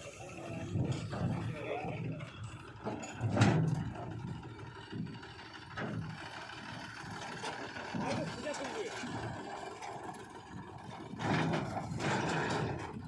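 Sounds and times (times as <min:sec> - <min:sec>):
machinery clanking and rattling: 0:00.0 - 0:13.0.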